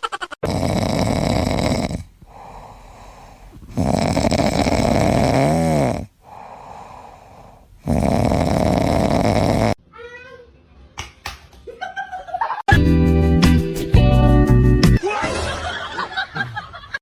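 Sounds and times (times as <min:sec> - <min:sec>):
pet snoring: 0:00.4 - 0:09.8.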